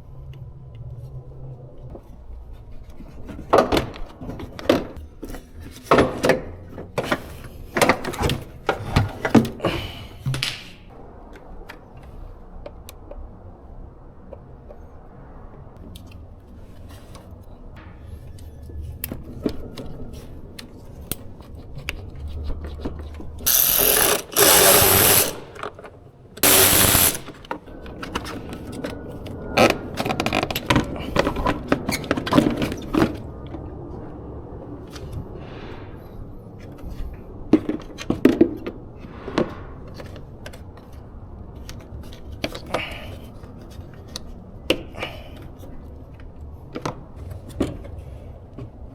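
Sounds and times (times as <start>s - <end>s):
ratchet clicks: 23.5s - 25.6s, 26.4s - 27.4s
loud rushing bursts: 26.4s - 27.4s.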